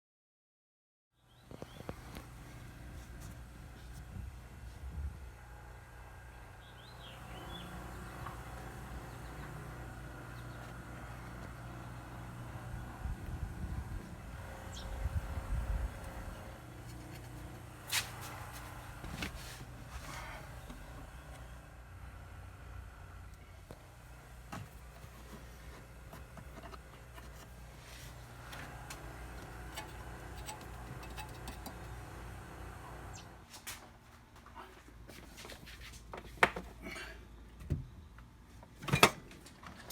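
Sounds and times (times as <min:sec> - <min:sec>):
low machine hum: 0:01.2 - 0:33.5
bird chirps: 0:06.6 - 0:08.2, 0:14.7 - 0:15.0.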